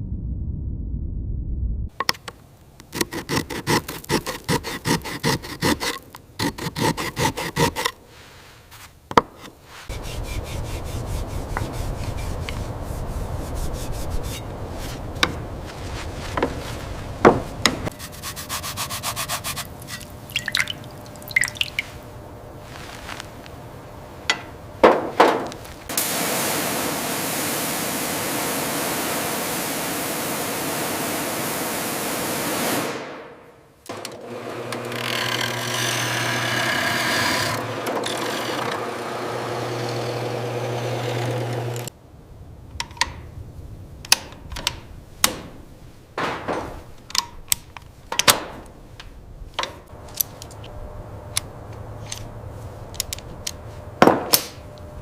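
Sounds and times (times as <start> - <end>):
motor humming: 33.9 - 41.9
power tool motor running: 33.9 - 41.9.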